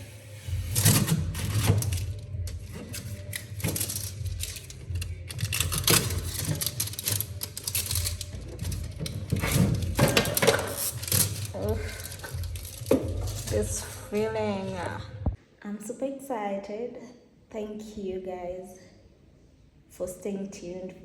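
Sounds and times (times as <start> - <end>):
objects being handled clicking: 0.8 - 13.6.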